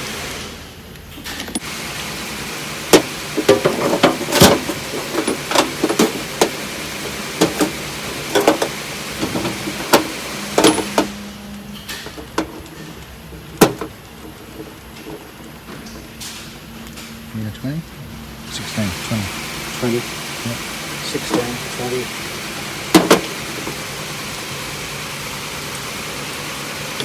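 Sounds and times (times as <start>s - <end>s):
metal tools clinking: 1.2s - 1.7s, 3.4s - 16.5s.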